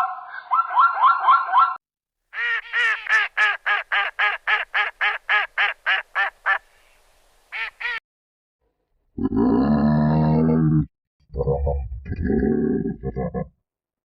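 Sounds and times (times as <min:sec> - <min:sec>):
duck quacking: 0:02.4 - 0:06.6.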